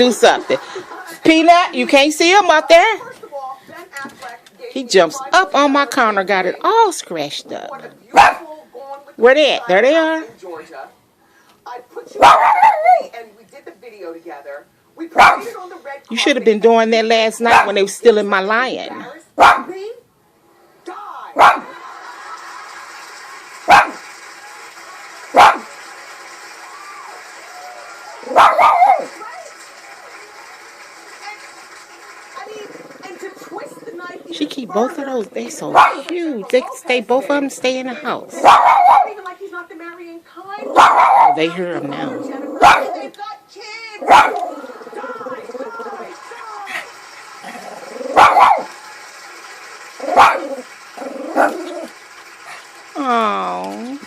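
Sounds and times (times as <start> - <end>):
dog barking: 8.1 - 8.5, 12.2 - 13.1, 15.2 - 15.6, 17.5 - 17.7, 19.4 - 19.8, 21.4 - 21.8, 23.7 - 24.0, 25.4 - 25.7, 28.3 - 29.1, 35.7 - 36.1, 38.4 - 39.2, 40.7 - 41.4, 42.6 - 43.1, 44.0 - 44.5, 48.0 - 48.7, 50.0 - 50.6.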